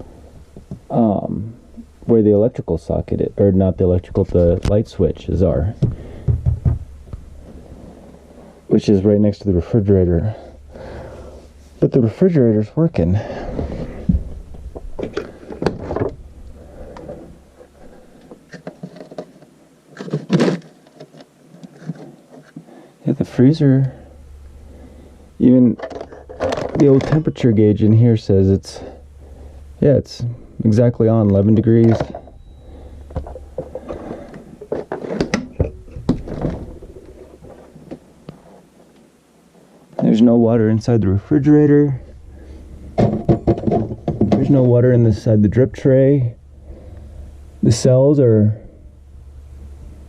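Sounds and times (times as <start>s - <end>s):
low steady hum: 0.0s - 50.0s
refrigerator door and shelves knocking: 5.8s - 6.9s
knocks and handling clatter: 13.5s - 16.2s, 16.8s - 22.7s, 25.7s - 27.6s, 31.2s - 38.4s, 43.0s - 44.8s.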